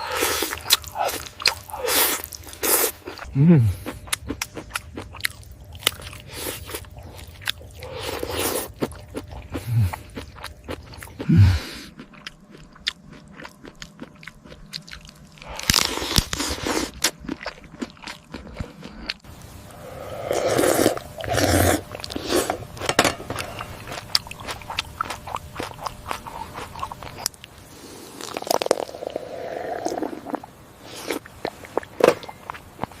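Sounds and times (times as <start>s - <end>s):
biting and chewing: 0.0s - 19.3s, 20.2s - 29.0s.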